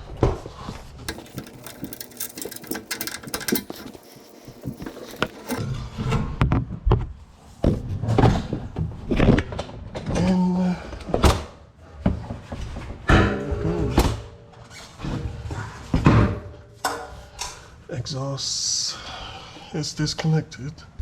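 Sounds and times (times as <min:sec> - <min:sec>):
hand ratchet clicking: 0:01.1 - 0:05.6.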